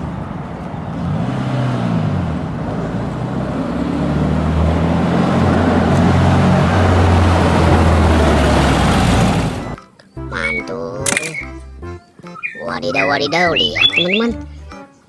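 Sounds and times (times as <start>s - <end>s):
car engine running: 0.0s - 9.8s.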